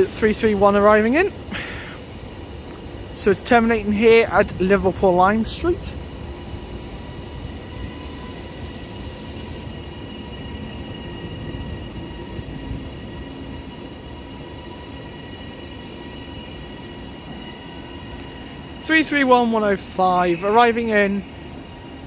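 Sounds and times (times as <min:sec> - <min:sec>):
high-pitched train whine: 0:00.0 - 0:22.0
train rumble: 0:00.0 - 0:22.0
high hiss: 0:01.3 - 0:11.1.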